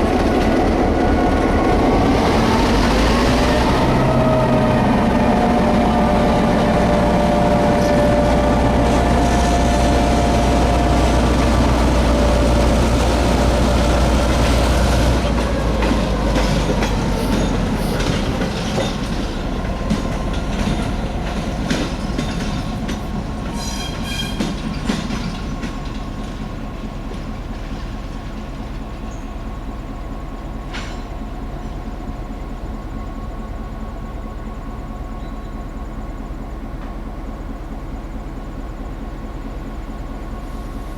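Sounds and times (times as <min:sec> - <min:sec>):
diesel locomotive engine running: 0:00.0 - 0:40.9
wheels clicking over rail joints: 0:07.5 - 0:29.5
high wheel squeal: 0:16.6 - 0:26.0.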